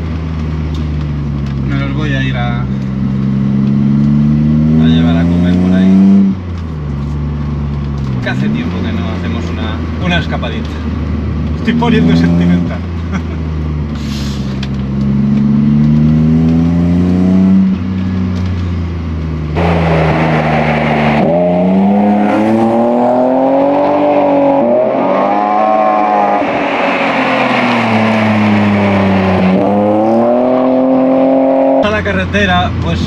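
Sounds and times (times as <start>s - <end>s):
car engine revving: 0.0s - 33.0s.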